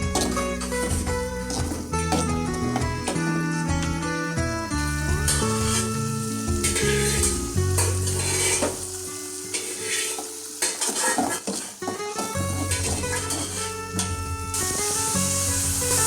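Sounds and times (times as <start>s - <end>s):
utensil scraping pan: 0.0s - 3.3s, 6.6s - 8.9s, 9.5s - 14.2s
food sizzling in frying pan: 0.0s - 4.0s, 4.7s - 16.0s
instrumental background music: 0.0s - 16.0s.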